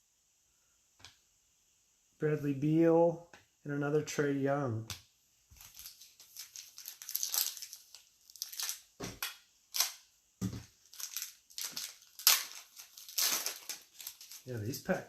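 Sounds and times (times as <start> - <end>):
foil wrapper crinkling and tearing: 5.5 - 10.1, 10.7 - 15.0.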